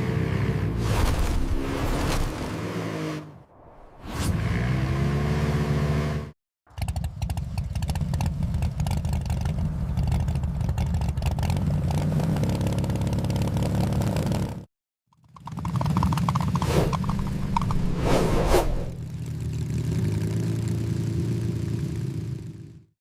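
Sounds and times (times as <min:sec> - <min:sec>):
motorcycle engine running: 0:06.7 - 0:17.9, 0:19.0 - 0:22.9.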